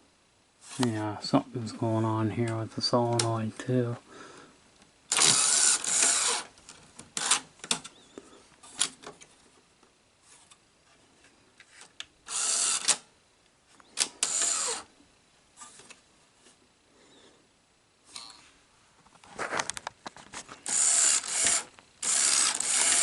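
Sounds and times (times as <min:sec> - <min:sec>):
tape-loading mechanism whirring: 0:05.1 - 0:07.9, 0:12.2 - 0:13.1, 0:13.8 - 0:14.9, 0:20.6 - 0:23.0.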